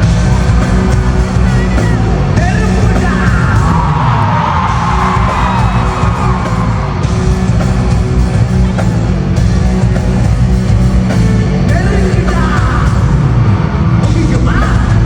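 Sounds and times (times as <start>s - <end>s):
live band music: 0.0s - 3.8s, 4.7s - 13.3s
person singing: 11.7s - 13.2s.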